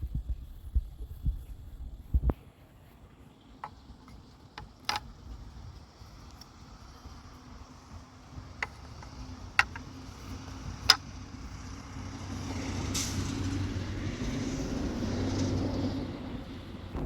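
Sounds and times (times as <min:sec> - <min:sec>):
motor vehicle rumble: 0:00.0 - 0:17.0
sharp clicks: 0:03.6 - 0:05.5.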